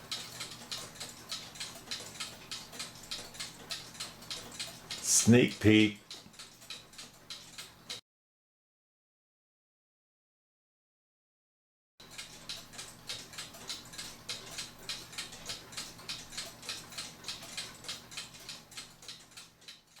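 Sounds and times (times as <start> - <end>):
mechanical clock ticking: 0.0 - 8.0, 12.0 - 20.0.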